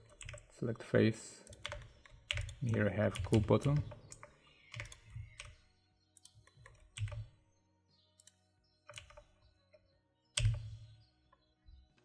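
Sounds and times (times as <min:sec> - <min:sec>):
computer keyboard keystrokes: 0:00.0 - 0:00.5, 0:01.5 - 0:05.6, 0:06.2 - 0:07.3, 0:08.2 - 0:09.3, 0:10.4 - 0:10.8.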